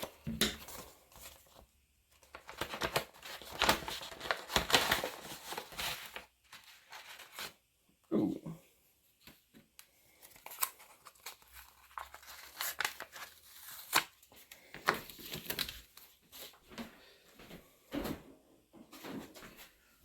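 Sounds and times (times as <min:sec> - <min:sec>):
packaging rustling and tearing: 0:00.0 - 0:07.6, 0:10.1 - 0:16.5.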